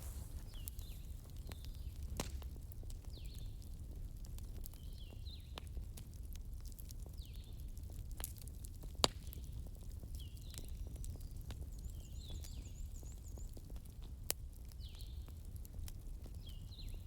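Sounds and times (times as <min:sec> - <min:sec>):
fire snap: 0:00.0 - 0:03.0
wood fire crackling and popping: 0:00.0 - 0:17.0.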